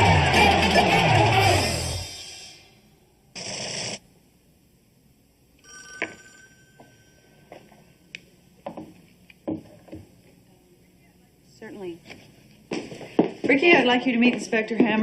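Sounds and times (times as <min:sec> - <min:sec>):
telephone electronic ring: 0:05.6 - 0:07.6.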